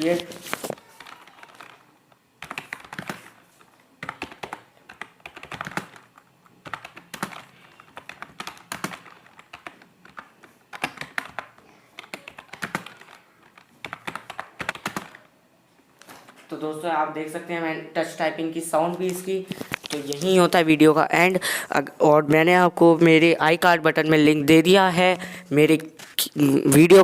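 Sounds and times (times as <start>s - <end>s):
keyboard typing: 0.0s - 15.4s.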